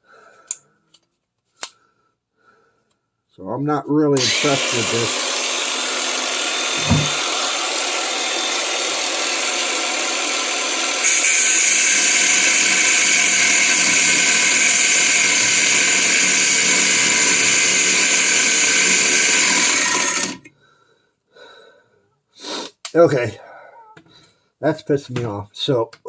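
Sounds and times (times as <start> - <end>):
cutoff tool cutting metal: 4.2 - 20.5.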